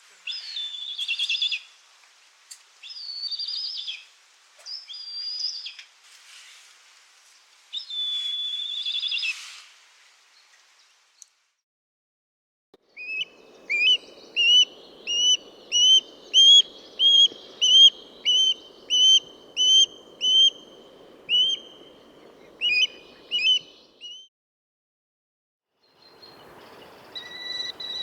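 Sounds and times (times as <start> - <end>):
faint background hiss: 0.0 - 11.6, 12.9 - 24.1
bird whistling rising notes: 13.0 - 24.3, 27.2 - 28.0.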